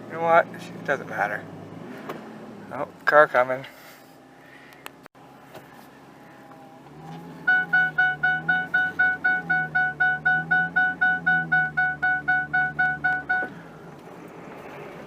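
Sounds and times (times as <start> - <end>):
engine idling: 4.4 - 14.2
truck warning beeper: 7.4 - 13.6.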